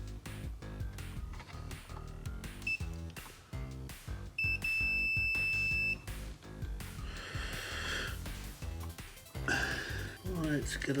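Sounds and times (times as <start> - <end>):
background music: 0.0 - 11.0
multimeter beep: 2.6 - 3.0, 4.4 - 6.1.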